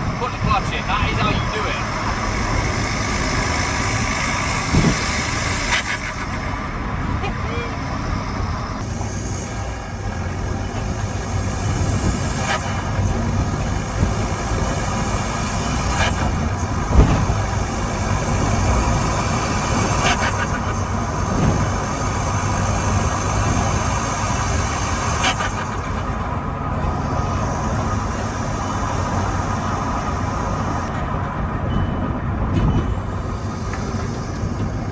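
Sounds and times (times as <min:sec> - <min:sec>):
car engine and road noise: 0:00.0 - 0:34.9.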